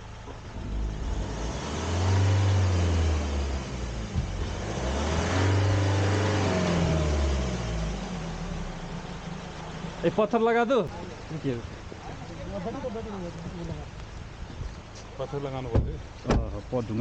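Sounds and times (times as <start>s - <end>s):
car engine revving hard: 0.6s - 10.2s.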